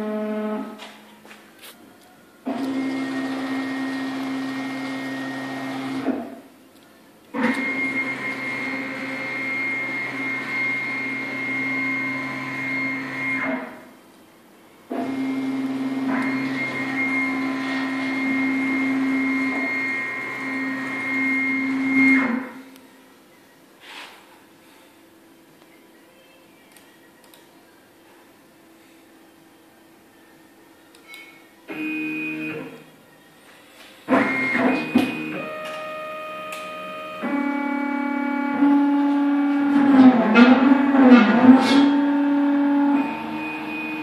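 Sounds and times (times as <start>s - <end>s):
cnc router motor whine: 0.0s - 0.8s, 2.5s - 6.3s, 7.4s - 13.8s, 14.9s - 22.6s, 34.1s - 44.0s.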